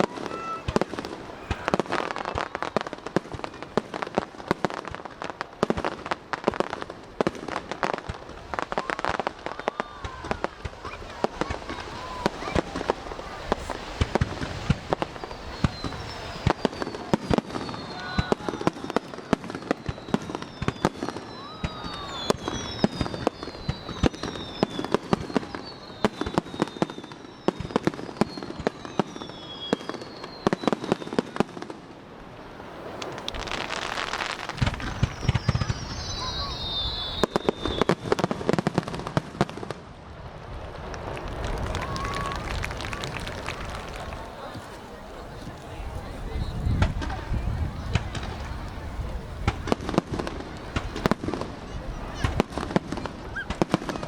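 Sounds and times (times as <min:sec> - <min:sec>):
fireworks bangs and crackling: 0:00.0 - 0:54.0
high falling whistles: 0:15.1 - 0:31.0, 0:33.1 - 0:38.0.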